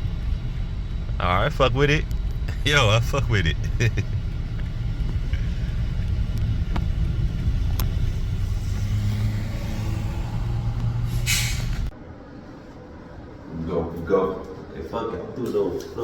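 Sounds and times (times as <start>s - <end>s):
car engine and road rumble: 0.0s - 13.6s
burst of hiss: 11.1s - 11.9s.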